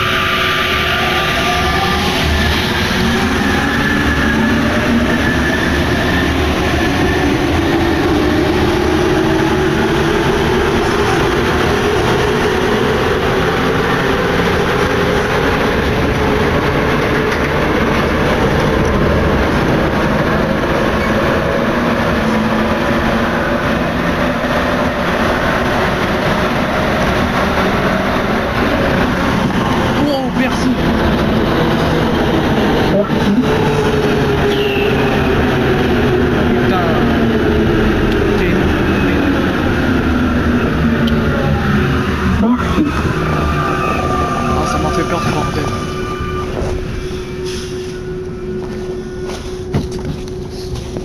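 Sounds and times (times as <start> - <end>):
train rolling rumble: 0.0 - 51.0
train motor whine: 40.7 - 51.0.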